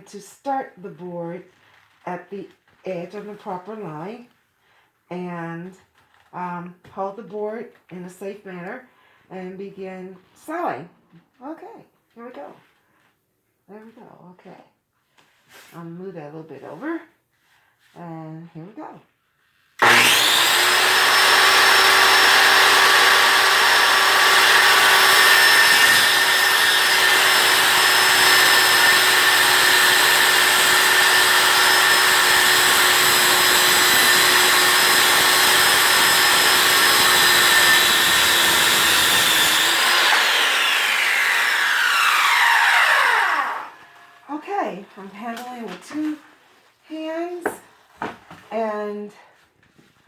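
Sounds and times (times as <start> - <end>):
saw blade spinning down: 19.8 - 44.3
circular saw cutting wood: 19.8 - 45.4.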